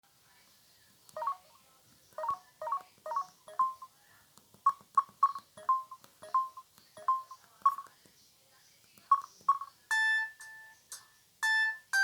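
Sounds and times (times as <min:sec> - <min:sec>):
mobile phone electronic beeps: 0:01.2 - 0:01.5, 0:02.2 - 0:03.9, 0:04.7 - 0:07.9, 0:09.1 - 0:10.8, 0:11.4 - 0:12.0.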